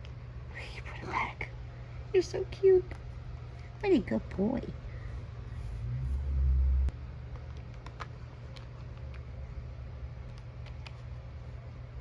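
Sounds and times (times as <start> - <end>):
low rumble: 4.7 - 7.2.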